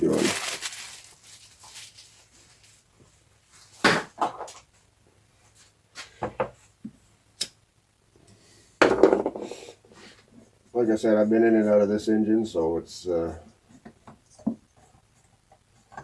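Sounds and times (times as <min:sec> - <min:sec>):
tools knocking on a workbench: 0:08.8 - 0:09.5.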